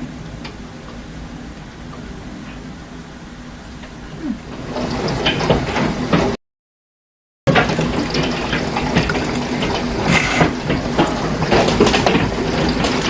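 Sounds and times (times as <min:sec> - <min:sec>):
heavy rain splashing: 0:04.2 - 0:06.4, 0:07.5 - 0:13.0
raindrops ticking on surfaces: 0:07.5 - 0:13.0.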